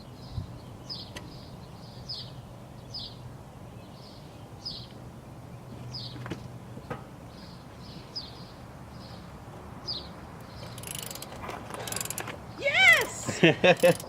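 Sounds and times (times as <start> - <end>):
birds chirping: 0.0 - 14.0
ratchet wrench clicking: 10.6 - 12.3, 13.7 - 14.0.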